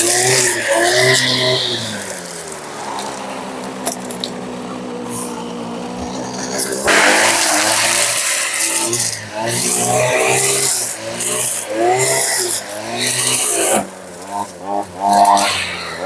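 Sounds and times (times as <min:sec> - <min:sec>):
brushcutter engine: 0:00.0 - 0:16.0.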